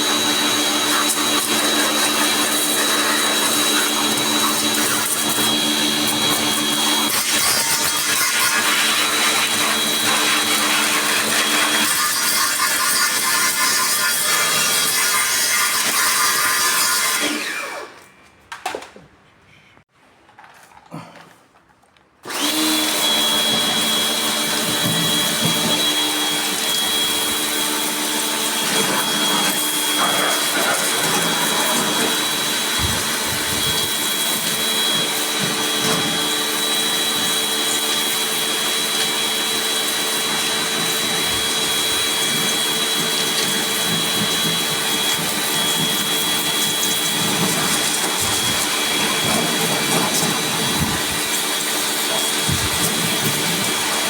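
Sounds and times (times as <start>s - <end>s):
small electric motor whining: 22.3s - 54.0s.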